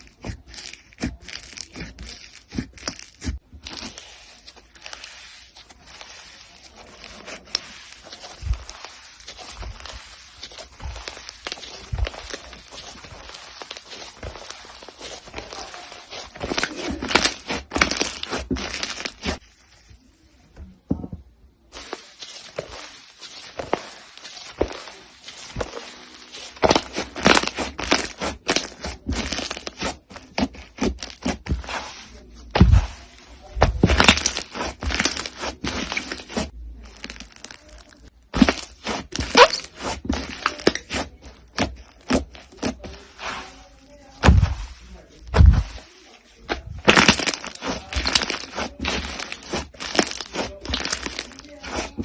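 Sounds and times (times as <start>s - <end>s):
crunchy slime crackling: 0.0s - 20.0s, 21.6s - 52.0s
deep squelching thumps: 44.2s - 45.8s.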